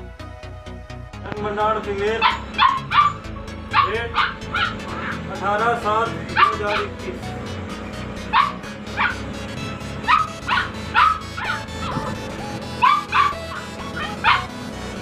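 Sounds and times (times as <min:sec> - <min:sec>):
background music: 0:00.0 - 0:15.0
puppies yipping and whimpering: 0:02.2 - 0:05.3, 0:06.3 - 0:06.9, 0:08.2 - 0:09.3, 0:10.0 - 0:14.6.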